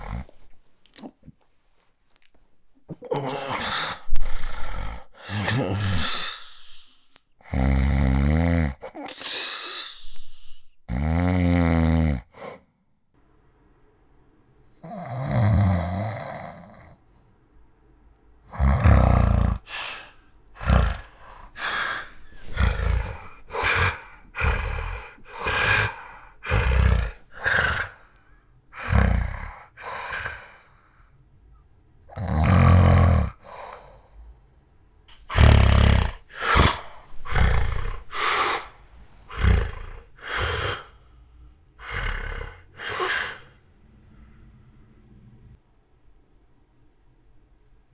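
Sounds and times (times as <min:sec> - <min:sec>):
man snoring loudly: 0:00.0 - 0:00.5, 0:03.0 - 0:06.8, 0:07.5 - 0:09.0, 0:09.9 - 0:12.5, 0:14.8 - 0:17.0, 0:18.5 - 0:28.1, 0:28.8 - 0:30.5, 0:32.1 - 0:33.8, 0:35.1 - 0:40.9, 0:41.8 - 0:43.5
heavy breath: 0:00.0 - 0:01.2, 0:02.9 - 0:10.9, 0:12.3 - 0:12.7, 0:18.5 - 0:31.3, 0:32.1 - 0:45.6
snorts and gasping breaths: 0:00.0 - 0:01.3, 0:02.9 - 0:12.7, 0:18.5 - 0:31.2, 0:32.1 - 0:34.5, 0:35.1 - 0:45.5.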